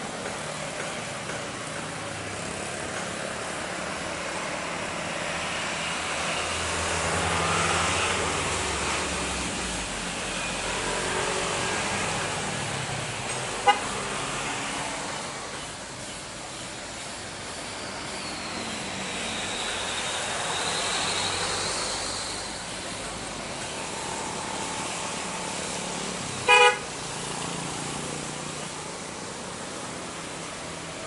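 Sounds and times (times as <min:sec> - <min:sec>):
road traffic passing: 0:00.0 - 0:31.0
vehicle horn toot: 0:13.6 - 0:13.9, 0:26.4 - 0:26.9.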